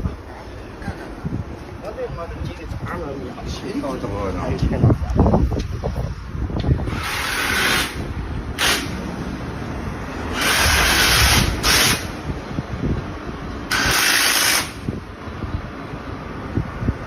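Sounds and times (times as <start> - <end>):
loud hissing bursts: 6.8 - 9.1, 10.2 - 12.2, 13.7 - 14.9.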